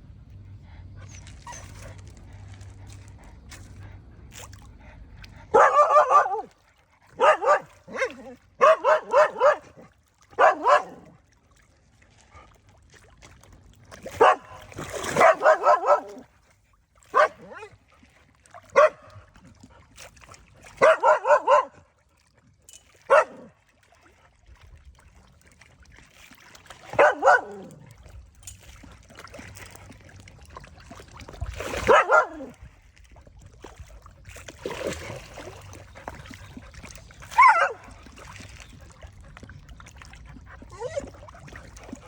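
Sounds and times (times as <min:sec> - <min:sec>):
dog barking: 0:05.5 - 0:06.5, 0:07.2 - 0:09.8, 0:10.4 - 0:11.0, 0:14.1 - 0:16.2, 0:17.1 - 0:17.7, 0:18.7 - 0:19.1, 0:20.8 - 0:21.8, 0:23.1 - 0:23.5, 0:27.0 - 0:27.7, 0:31.8 - 0:32.5, 0:37.3 - 0:37.8.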